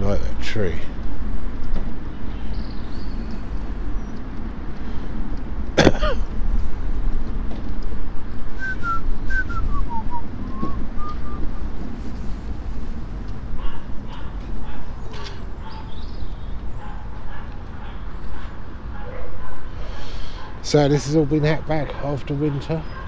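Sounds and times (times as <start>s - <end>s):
whistled notes: 8.6s - 11.4s.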